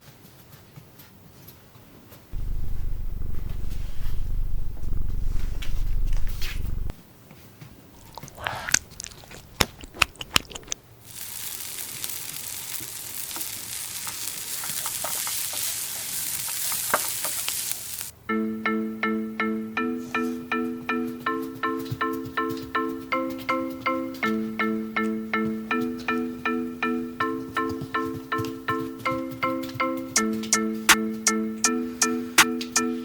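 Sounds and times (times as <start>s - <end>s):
crackling hiss: 2.4s - 6.9s, 8.0s - 18.2s
low rumble: 2.4s - 6.9s
candy crunching and clicking: 8.0s - 15.8s.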